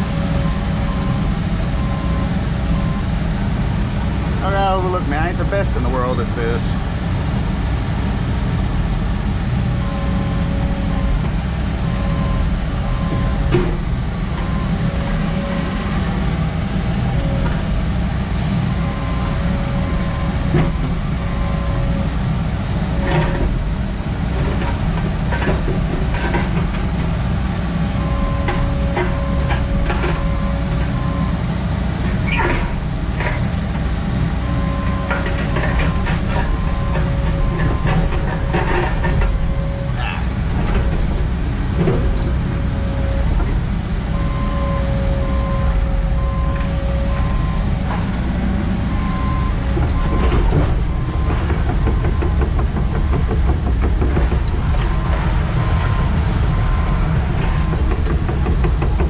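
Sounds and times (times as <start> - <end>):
constant hum: 0.0 - 59.0
truck engine and road rumble: 0.0 - 59.0.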